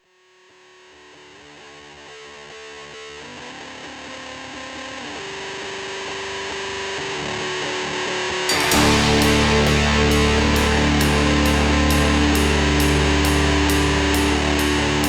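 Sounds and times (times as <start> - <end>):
distorted electric guitar: 8.5 - 15.0.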